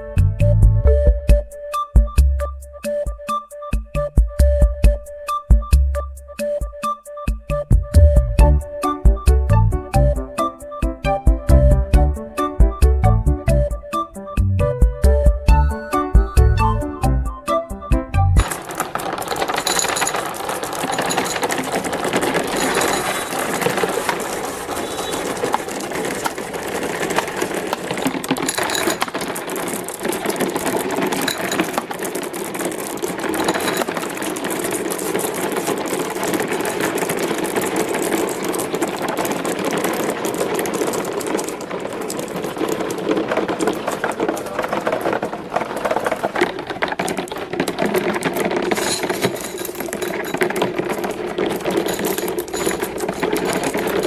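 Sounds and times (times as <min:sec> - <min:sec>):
marbles rolling on plastic tracks: 0:15.6 - 0:54.0.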